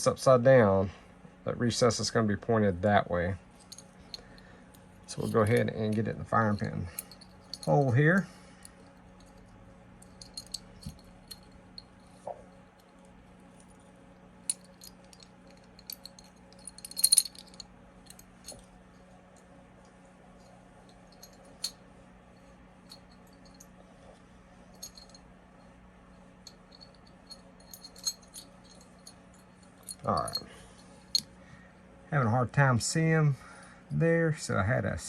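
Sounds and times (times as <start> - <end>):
small steel parts clicking: 9.2 - 11.9, 14.5 - 18.6.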